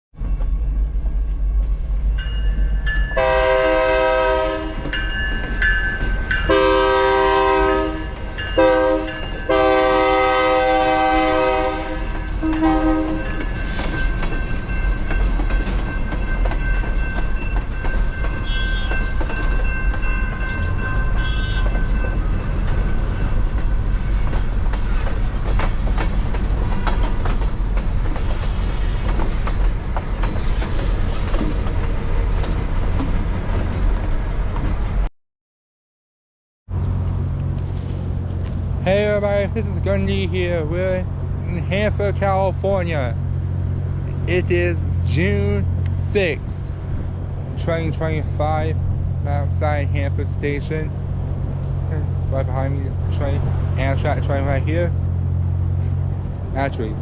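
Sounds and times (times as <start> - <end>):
train rumble: 0.1 - 35.1, 36.7 - 57.0
train horn blasts: 3.2 - 5.0, 6.4 - 13.4, 18.4 - 19.1, 21.0 - 21.8
wheels clicking over rail joints: 12.0 - 34.8.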